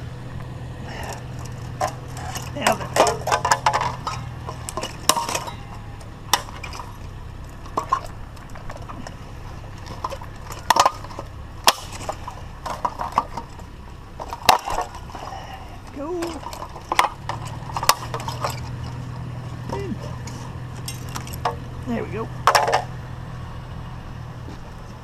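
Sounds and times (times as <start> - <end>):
steady low hum: 0.0 - 25.0
scrap items clinking and knocking: 0.9 - 23.0.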